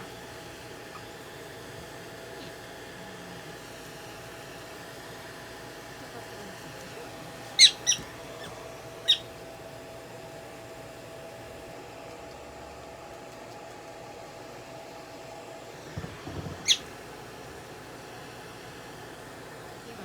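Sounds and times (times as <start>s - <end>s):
prairie dog squeaks: 7.6s - 9.3s, 16.6s - 17.0s.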